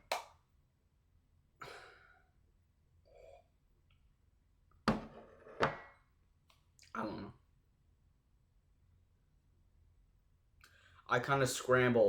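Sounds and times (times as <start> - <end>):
person sighing: 1.6 - 2.2.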